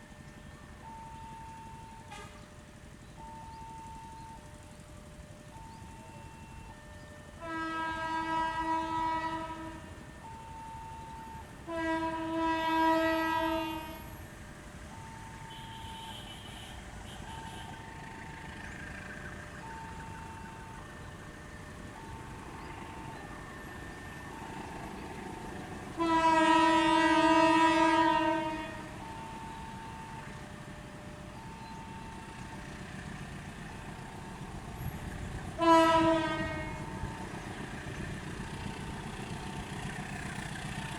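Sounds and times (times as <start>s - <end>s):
locomotive horn blasts: 2.0s - 2.5s, 6.5s - 10.0s, 11.6s - 14.2s, 15.3s - 18.1s, 25.9s - 30.4s, 35.6s - 37.2s.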